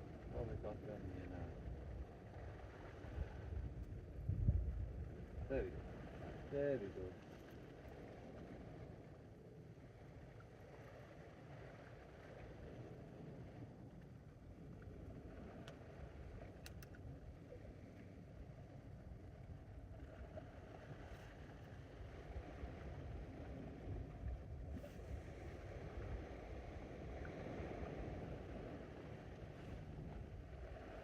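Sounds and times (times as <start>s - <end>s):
wind rumble on microphone: 0.0s - 31.0s
faint clicks: 16.5s - 17.1s
sea waves washing: 19.8s - 31.0s.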